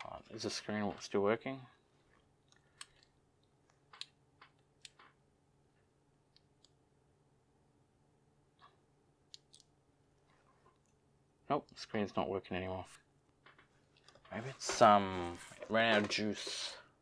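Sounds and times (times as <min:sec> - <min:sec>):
small clicks and taps: 0:02.5 - 0:05.2.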